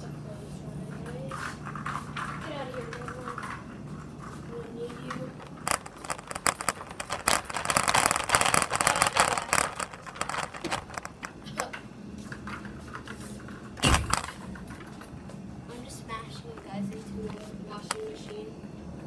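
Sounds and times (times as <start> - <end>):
cart rolling and rattling: 1.1 - 11.4
cart banging into machine: 13.8 - 14.3.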